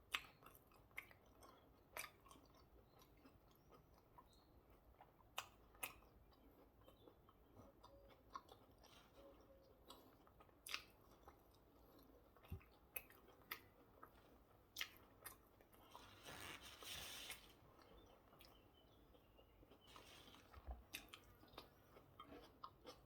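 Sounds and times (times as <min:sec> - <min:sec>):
person chewing and crunching food: 0:00.0 - 0:23.0
rustling crunch: 0:15.8 - 0:17.6, 0:19.8 - 0:21.4.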